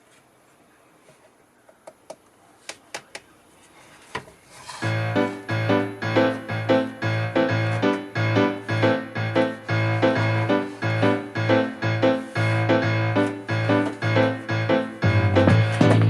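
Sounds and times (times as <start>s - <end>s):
keyboard playing repeated notes: 4.8s - 16.0s.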